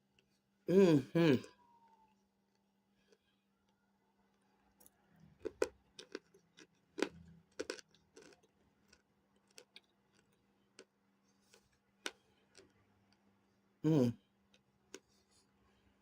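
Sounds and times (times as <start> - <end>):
hard chunks being chewed: 4.8 - 12.9.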